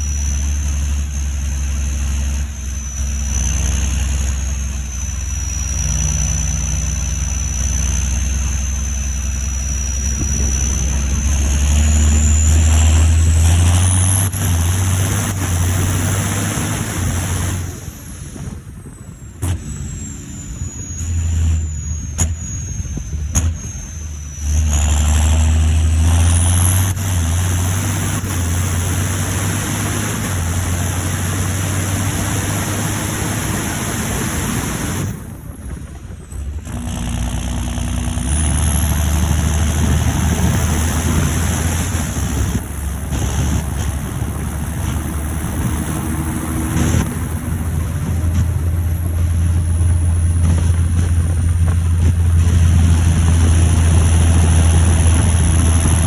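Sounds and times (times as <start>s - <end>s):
high turbo whistle: 0.0s - 35.5s
tractor diesel engine under load: 0.0s - 56.0s.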